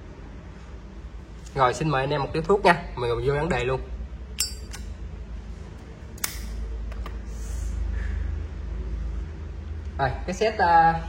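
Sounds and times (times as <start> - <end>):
low steady rumble: 0.0 - 11.0
lighter sharp click: 6.2 - 6.6.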